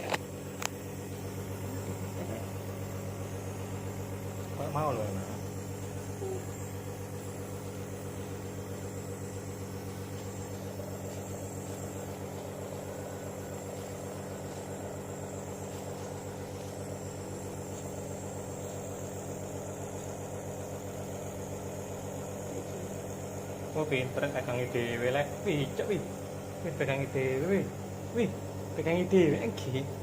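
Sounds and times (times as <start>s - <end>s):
nebulizer compressor humming: 0.0s - 30.0s.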